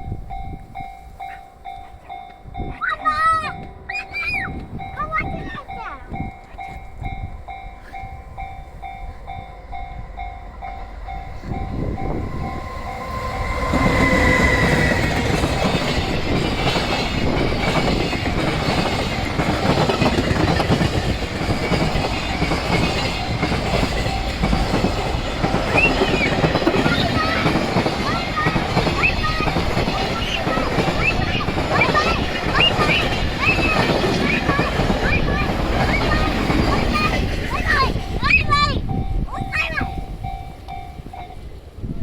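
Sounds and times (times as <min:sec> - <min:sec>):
level-crossing warning bell: 0:00.0 - 0:42.0
train rumble: 0:00.0 - 0:42.0
wheel clatter on rails: 0:13.6 - 0:38.7.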